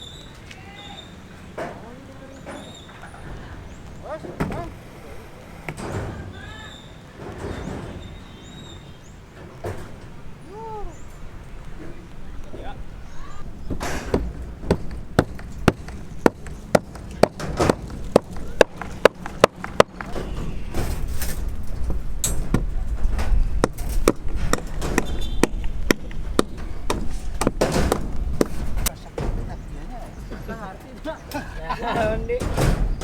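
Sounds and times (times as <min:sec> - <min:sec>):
hammer blows: 0:13.4 - 0:29.7.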